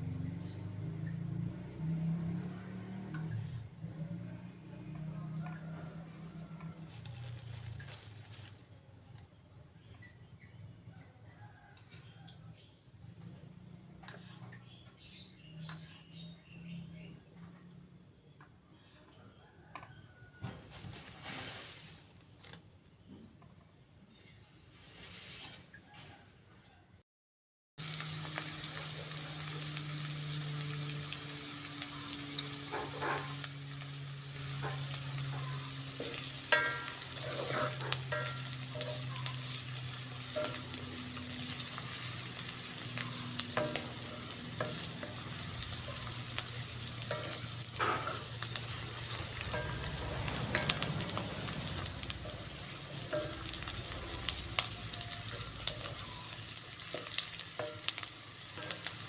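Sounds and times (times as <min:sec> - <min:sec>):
food sizzling in a frying pan: 0:06.4 - 0:08.6, 0:27.8 - 0:59.0
spatula scraping a pan: 0:32.4 - 0:33.5, 0:34.3 - 0:59.0.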